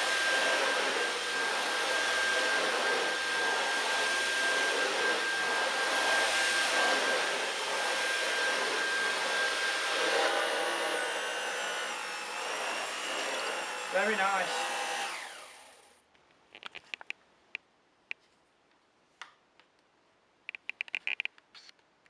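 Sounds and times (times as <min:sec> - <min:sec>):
vacuum cleaner whine: 0:00.0 - 0:16.0.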